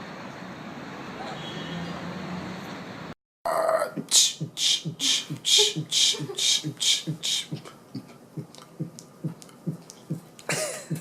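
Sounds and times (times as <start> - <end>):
low thumping beat: 4.0 - 11.0
hissing hi-hat: 4.1 - 7.8.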